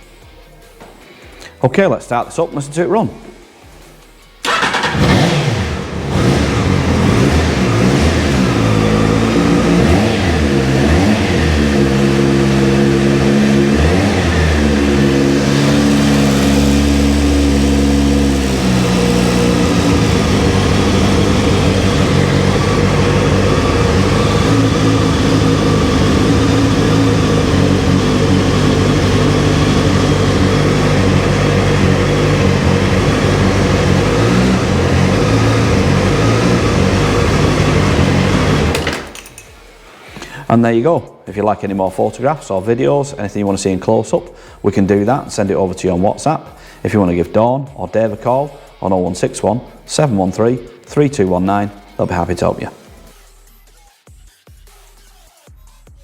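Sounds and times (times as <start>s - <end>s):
motorcycle engine revving and idling: 4.4s - 39.8s, 48.8s - 53.2s.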